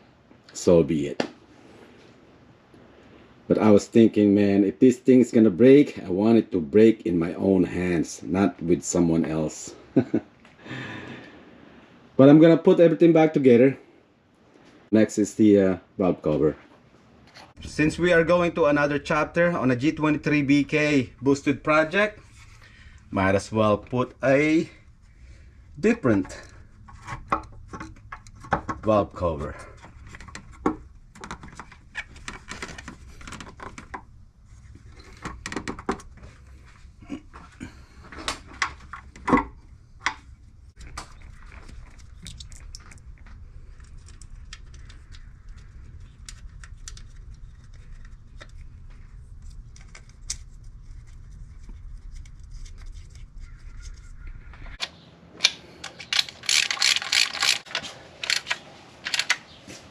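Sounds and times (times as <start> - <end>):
rapid clicking and rattling: 56.1 - 59.4.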